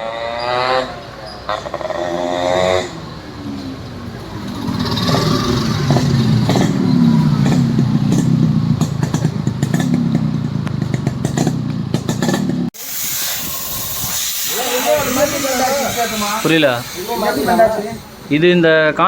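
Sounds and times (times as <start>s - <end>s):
motorcycle engine revving: 0.0s - 12.8s.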